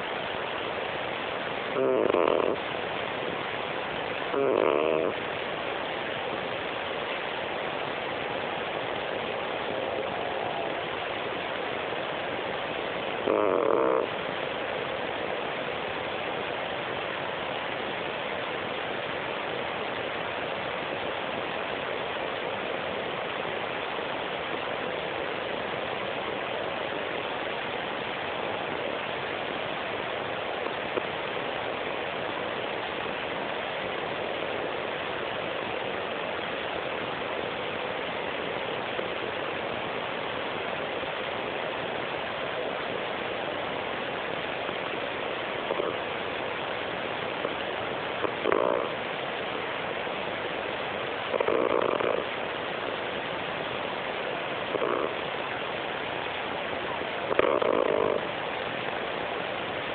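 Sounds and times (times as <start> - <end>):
steady hiss: 0.0 - 59.9
cat snoring softly: 1.7 - 2.6, 4.3 - 5.2, 13.2 - 14.2, 45.6 - 46.0, 48.2 - 49.0, 51.3 - 52.4, 54.7 - 55.2, 57.3 - 58.3.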